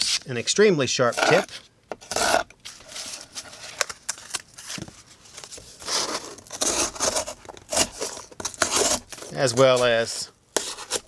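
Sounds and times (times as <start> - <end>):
knife cutting cardboard: 1.0 - 11.0.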